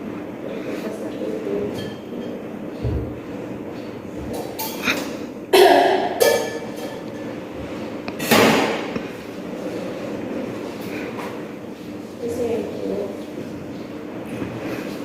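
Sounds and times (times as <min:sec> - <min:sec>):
woman coughing forcefully: 0:04.9 - 0:06.4.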